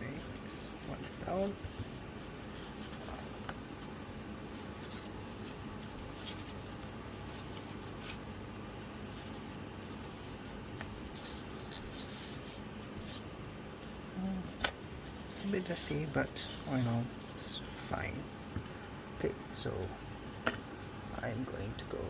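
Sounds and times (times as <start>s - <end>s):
hand wiping fan parts: 0.0s - 13.3s, 15.0s - 18.9s.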